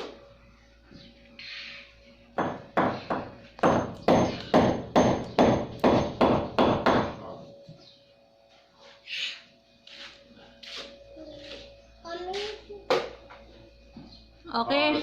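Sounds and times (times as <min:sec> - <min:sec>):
hammer hitting nail: 0:02.4 - 0:07.2.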